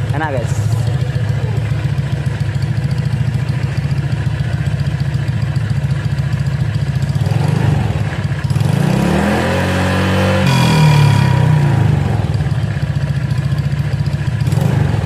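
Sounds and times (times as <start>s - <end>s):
scooter engine idling and revving: 0.0s - 15.0s.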